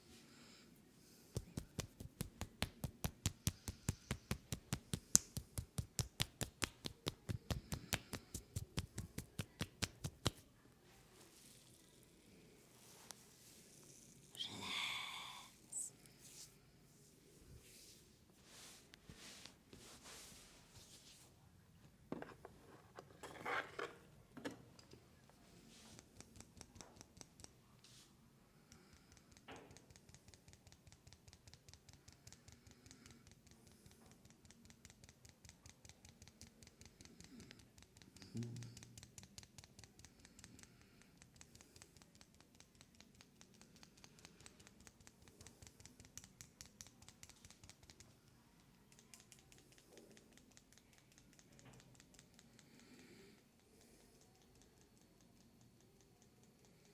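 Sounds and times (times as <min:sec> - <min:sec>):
fingertips scratching hair: 0:01.4 - 0:10.4.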